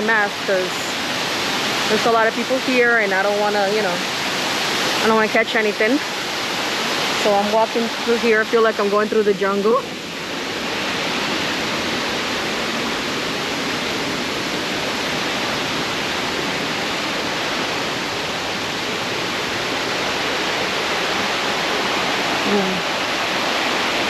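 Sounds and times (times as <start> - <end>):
river and waterfall rushing: 0.0 - 24.0.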